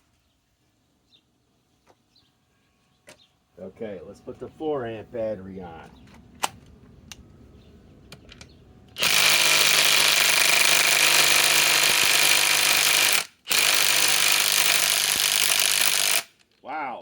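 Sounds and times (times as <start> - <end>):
impact wrench hammering: 9.0 - 16.3.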